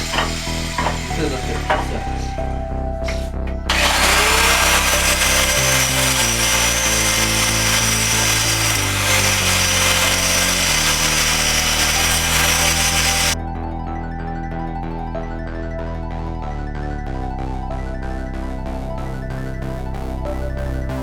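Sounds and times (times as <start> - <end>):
power tool whining: 0.0 - 13.4
background music: 0.0 - 21.0.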